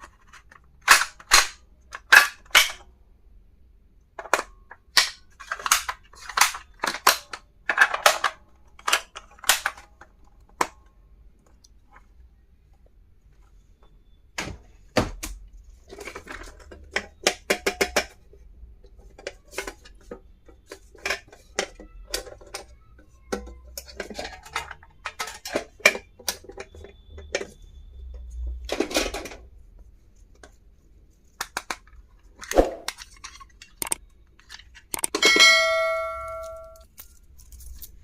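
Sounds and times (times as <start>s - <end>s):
small pieces clicking and rattling: 31.4s - 35.2s, 36.3s - 38.0s.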